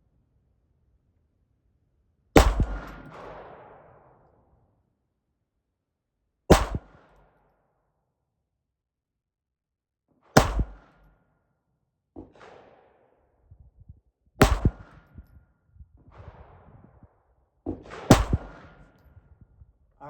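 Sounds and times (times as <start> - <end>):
suppressed pistol shots: 2.4 - 3.9, 6.5 - 7.1, 10.4 - 11.1, 14.4 - 15.1, 17.7 - 19.1.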